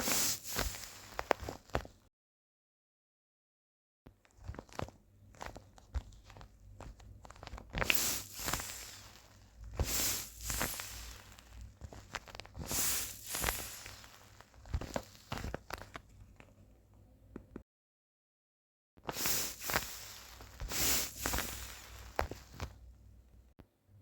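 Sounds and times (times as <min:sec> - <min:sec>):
packaging rustling and tearing: 0:04.4 - 0:16.1
small clicks and taps: 0:14.8 - 0:17.6.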